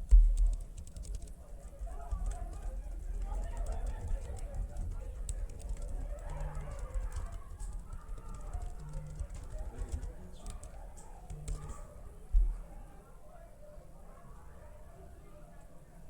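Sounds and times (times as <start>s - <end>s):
light tapping clicks: 0.0s - 11.9s
faint indistinct murmuring: 0.4s - 16.0s.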